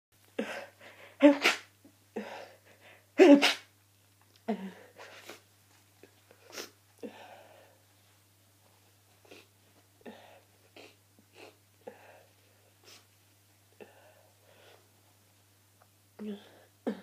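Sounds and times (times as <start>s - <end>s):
person sneezing: 0.4s - 2.4s, 3.2s - 3.7s.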